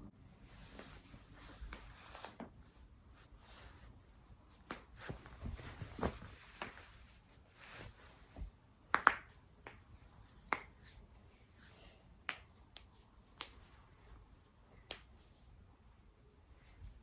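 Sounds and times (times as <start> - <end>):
faint shuffling movement: 0.4 - 8.6.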